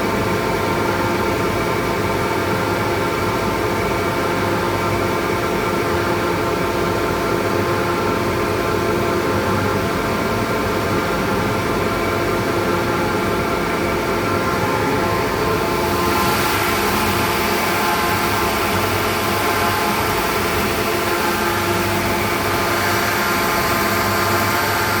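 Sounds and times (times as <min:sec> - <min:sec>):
sander motor hum and whine: 0:14.8 - 0:25.0.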